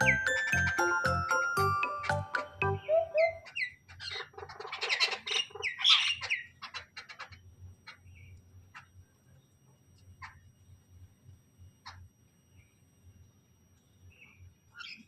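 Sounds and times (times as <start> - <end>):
birds chattering and squawking: 0.0 - 9.5, 10.2 - 10.6, 11.8 - 12.7, 14.0 - 15.0.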